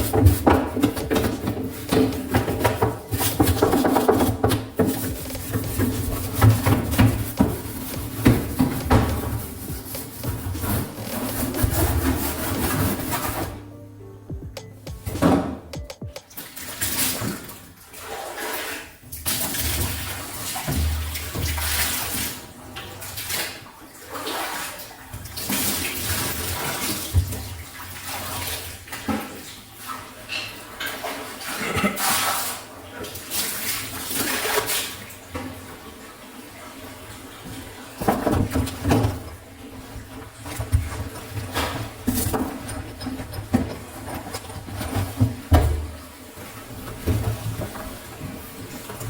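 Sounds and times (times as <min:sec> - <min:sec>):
hard objects knocking and clattering: 0:00.0 - 0:13.5, 0:40.4 - 0:46.0
water splashing in washing machine: 0:00.0 - 0:13.7, 0:16.2 - 0:49.0.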